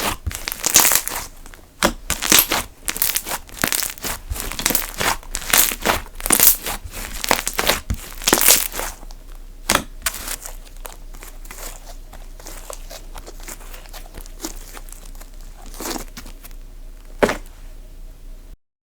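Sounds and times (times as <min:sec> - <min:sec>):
slime clicking and popping: 0:00.0 - 0:08.9.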